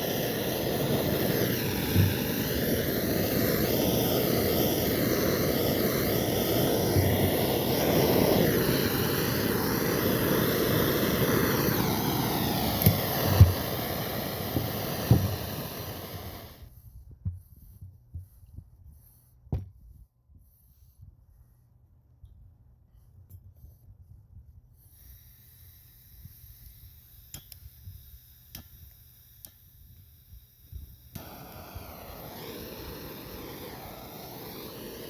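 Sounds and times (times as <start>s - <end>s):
blowtorch flame hissing: 0.0s - 16.7s, 30.3s - 35.0s.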